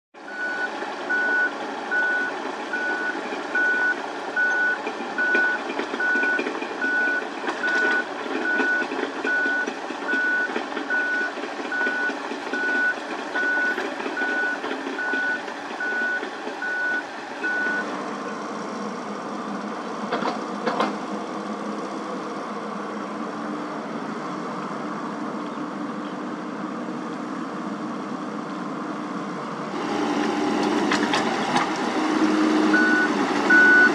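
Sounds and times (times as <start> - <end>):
excavator diesel engine: 0.2 - 33.9
travel alarm beeping: 0.3 - 17.9, 32.7 - 33.9.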